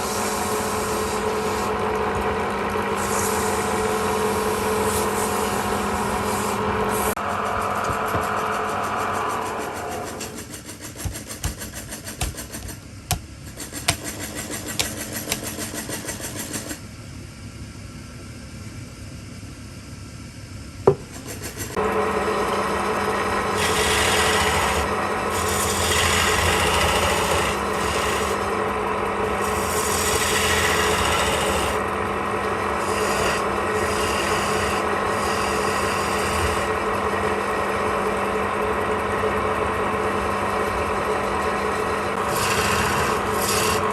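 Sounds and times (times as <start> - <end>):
wood rasping on lathe: 10.4 - 16.4, 21.7 - 43.9.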